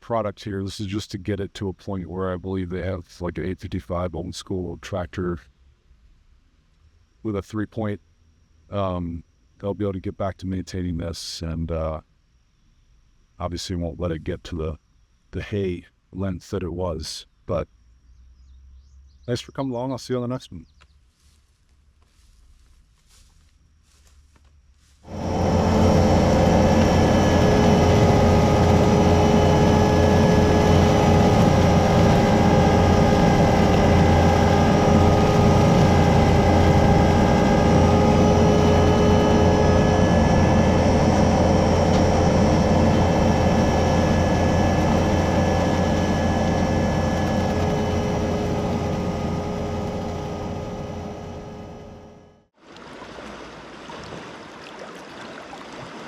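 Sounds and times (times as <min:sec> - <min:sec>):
constant whining tones: 0:22.0 - 0:52.5
diesel engine running: 0:25.1 - 0:52.5.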